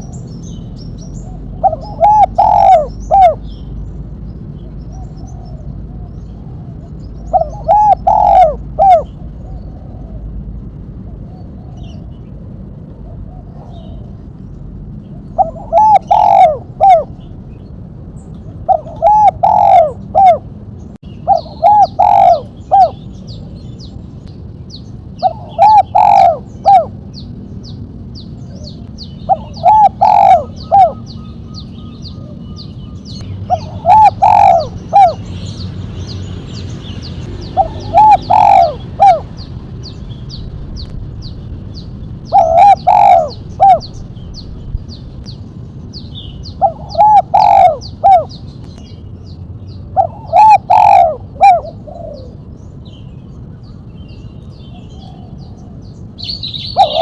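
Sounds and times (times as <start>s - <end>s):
dove cooing: 1.2s - 3.6s, 4.9s - 10.4s, 12.9s - 14.3s, 15.0s - 17.3s, 18.5s - 20.6s, 21.2s - 23.6s, 25.2s - 27.2s, 28.5s - 35.3s, 37.3s - 40.0s, 42.2s - 44.0s, 46.5s - 48.5s, 49.9s - 52.5s, 54.7s - 55.8s, 56.7s - 57.0s.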